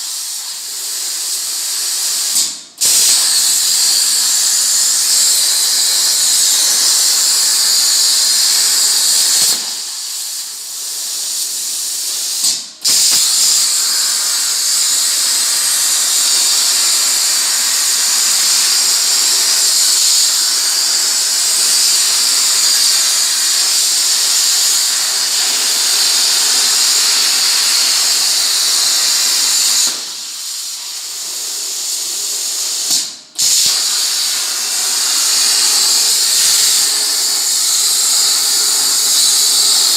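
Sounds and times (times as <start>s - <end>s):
plasma cutter hissing: 0.0s - 39.9s.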